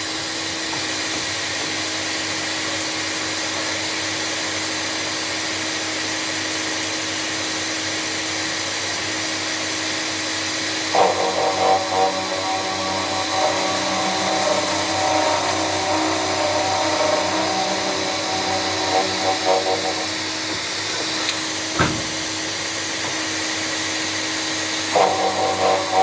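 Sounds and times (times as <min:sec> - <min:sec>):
cnc machine whine and hum: 0:10.6 - 0:22.0, 0:24.7 - 0:26.0.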